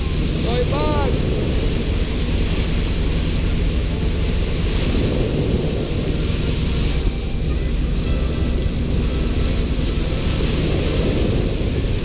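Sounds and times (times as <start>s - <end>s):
motorboat engine running: 0.0s - 12.0s
water rushing past hull: 0.0s - 12.0s
wind on microphone: 0.0s - 12.0s.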